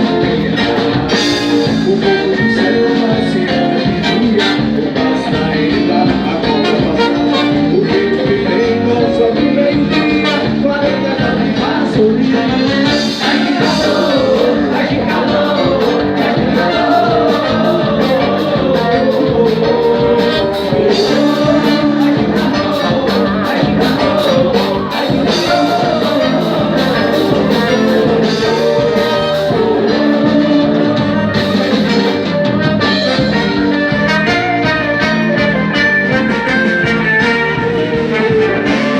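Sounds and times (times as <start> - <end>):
band with singer and guitar: 0.0 - 38.9
steady percussion beat: 12.7 - 38.9.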